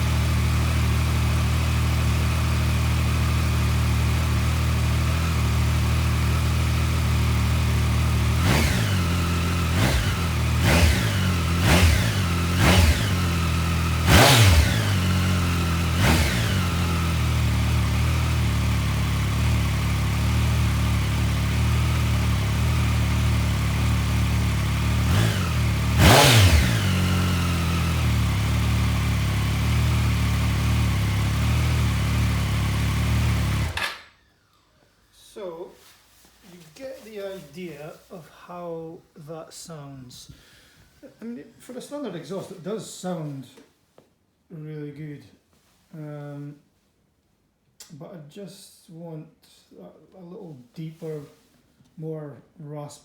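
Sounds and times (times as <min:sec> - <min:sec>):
motorcycle engine idling: 0:00.0 - 0:33.8
engine throttle blips: 0:07.9 - 0:33.9.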